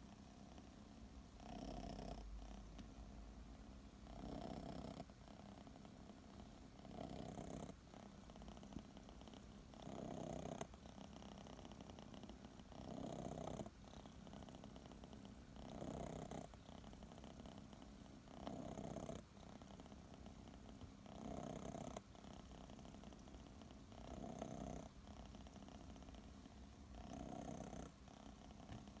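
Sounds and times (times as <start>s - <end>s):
kitten purring: 0.0s - 29.0s.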